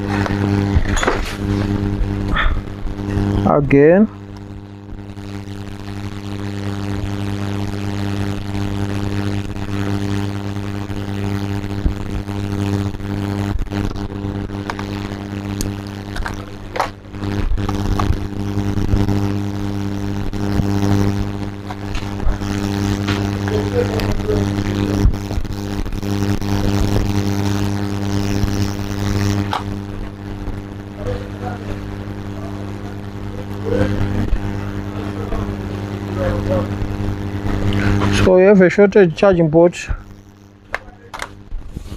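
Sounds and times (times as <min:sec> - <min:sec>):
electrical mains hum: 0:00.0 - 0:41.9.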